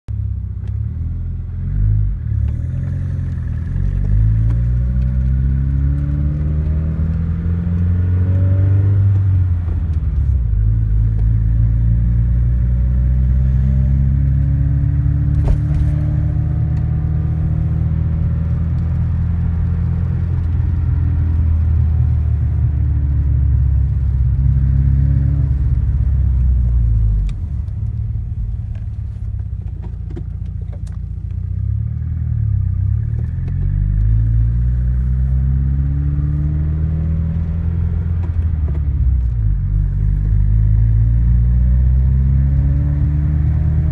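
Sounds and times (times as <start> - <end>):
car engine revving: 1.0 - 43.9.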